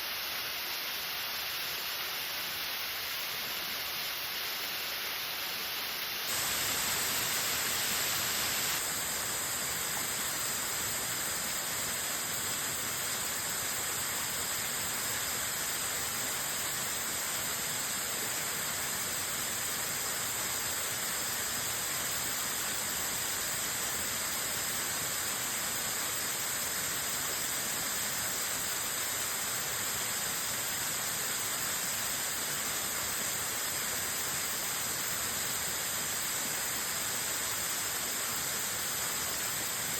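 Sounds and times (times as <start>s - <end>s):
waterfall rushing: 0.0s - 9.0s.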